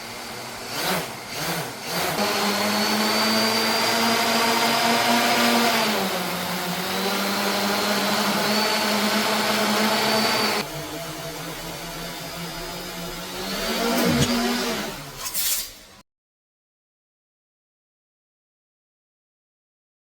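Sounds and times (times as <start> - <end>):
drone propellers whining: 6.9 - 15.2.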